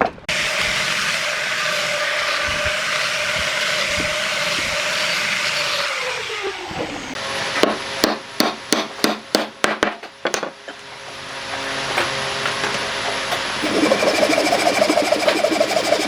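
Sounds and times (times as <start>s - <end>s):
power tool whine: 0.3s - 8.0s, 11.3s - 16.0s.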